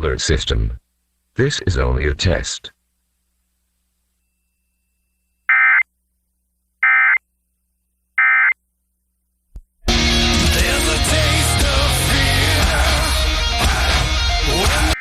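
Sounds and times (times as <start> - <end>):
rock music with electric guitar: 9.9 - 15.0
digital data tone bursts: 14.7 - 15.0.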